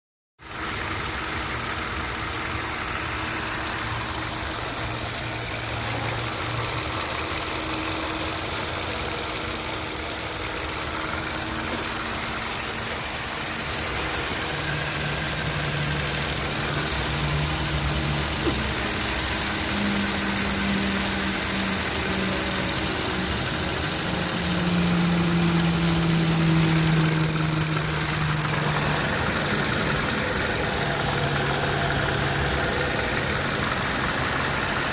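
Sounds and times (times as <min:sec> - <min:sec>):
engine running: 0:00.4 - 0:34.9
engine ticking: 0:00.4 - 0:34.9.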